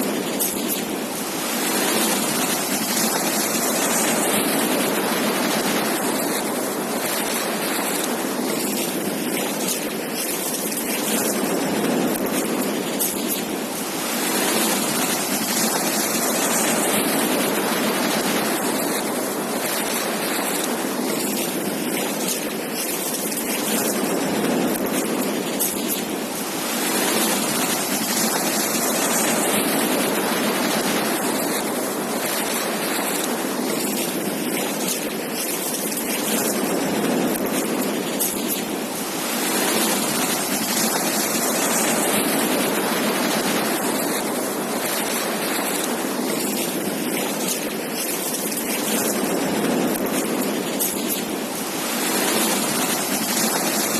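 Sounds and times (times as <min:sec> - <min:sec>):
ocean surf breaking on beach: 0:00.0 - 0:53.9.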